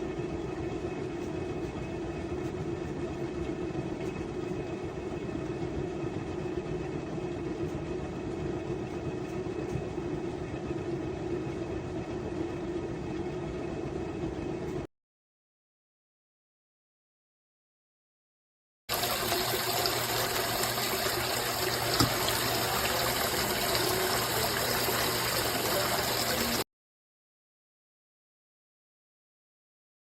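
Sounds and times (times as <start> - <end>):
washing machine running: 0.0 - 14.9, 18.9 - 26.7.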